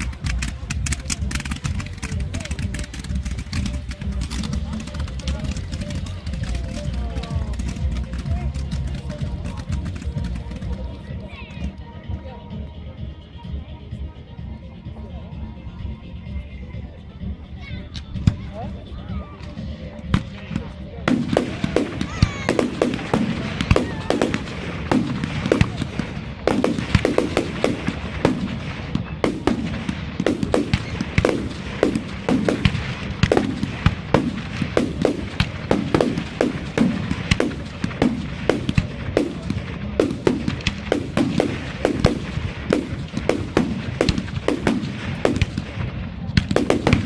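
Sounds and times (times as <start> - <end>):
fireworks banging: 0.0 - 10.9, 19.4 - 47.0.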